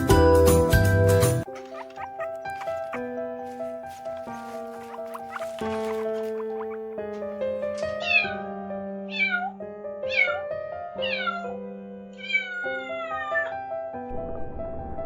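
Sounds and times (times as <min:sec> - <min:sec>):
soft piano music: 0:00.0 - 0:15.0
cat meowing: 0:01.5 - 0:08.4, 0:09.1 - 0:11.6, 0:12.2 - 0:13.6.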